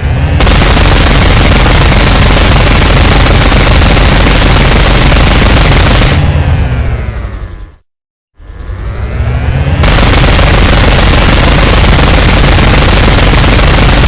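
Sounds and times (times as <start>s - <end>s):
gun barrels winding down whine: 0.0s - 7.8s, 8.4s - 14.0s
minigun rapid fire: 0.3s - 6.5s, 9.8s - 14.0s.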